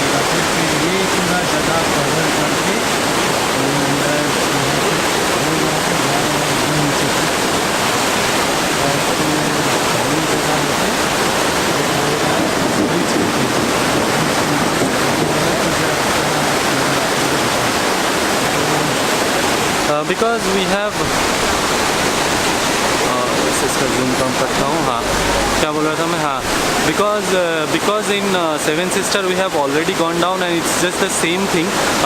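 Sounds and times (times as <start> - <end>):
waterfall rushing: 0.0 - 32.0
wind buffeting microphone: 10.8 - 19.7.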